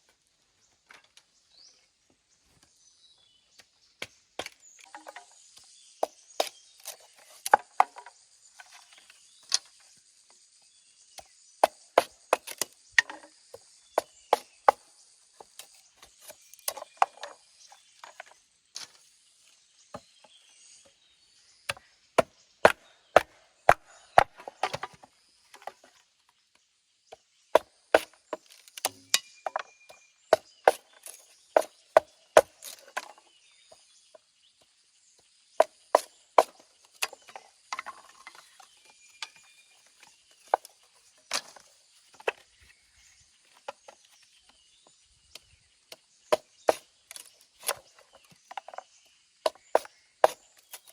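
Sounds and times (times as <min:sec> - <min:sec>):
wood being chopped by hand: 0:03.6 - 0:09.7, 0:11.2 - 0:14.8, 0:15.4 - 0:17.4, 0:21.6 - 0:25.9, 0:27.1 - 0:33.8, 0:35.6 - 0:39.6, 0:40.4 - 0:42.5, 0:45.9 - 0:50.9.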